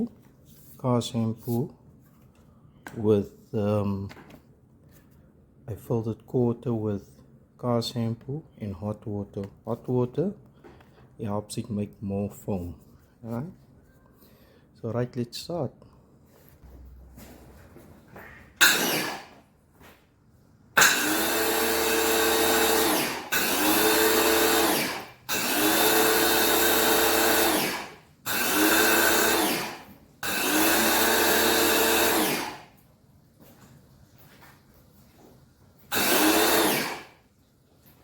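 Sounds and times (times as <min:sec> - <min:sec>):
pressure washer motor and pump: 0:18.6 - 0:19.4, 0:20.8 - 0:32.8, 0:35.9 - 0:37.2.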